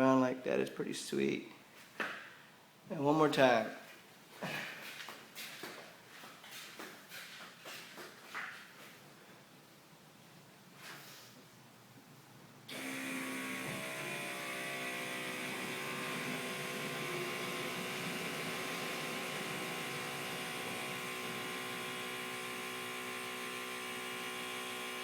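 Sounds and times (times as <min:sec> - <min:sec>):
electric air compressor whining: 0:12.7 - 0:25.0.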